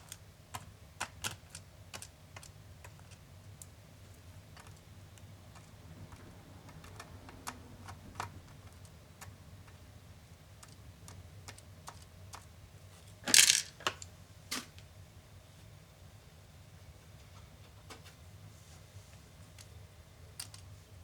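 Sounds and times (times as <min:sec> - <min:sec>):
light clicks and taps: 0:00.1 - 0:09.8.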